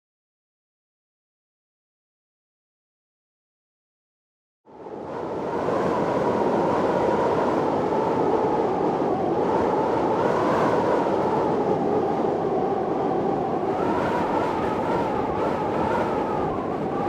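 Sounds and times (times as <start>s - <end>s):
storm wind whistling: 4.7s - 17.0s.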